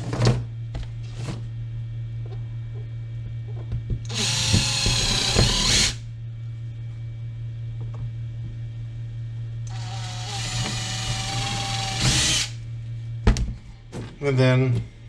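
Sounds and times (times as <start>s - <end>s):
cordless drill drilling: 4.1s - 6.0s, 9.7s - 12.6s.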